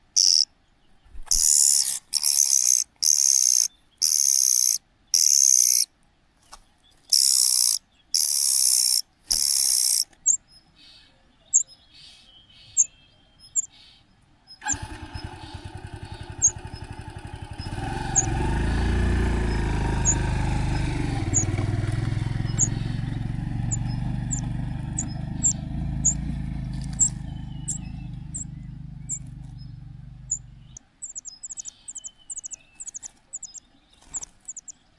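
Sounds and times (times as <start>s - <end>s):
young cuckoo hissing begging calls: 0.0s - 0.5s, 1.3s - 5.9s, 7.1s - 10.1s, 14.6s - 24.4s, 25.0s - 26.2s, 27.0s - 28.5s, 30.3s - 33.6s
short high chirps: 0.1s - 0.4s
steady low rumble: 19.1s - 30.8s.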